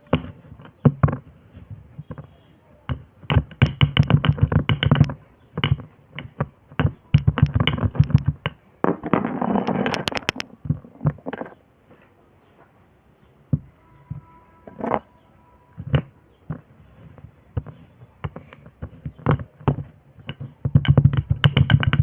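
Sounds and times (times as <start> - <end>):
sharp clicks: 3.3 - 8.4, 9.6 - 10.4.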